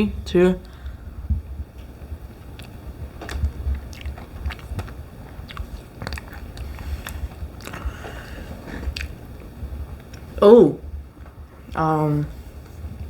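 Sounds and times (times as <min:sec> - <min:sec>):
person chewing pizza: 0:01.8 - 0:10.4.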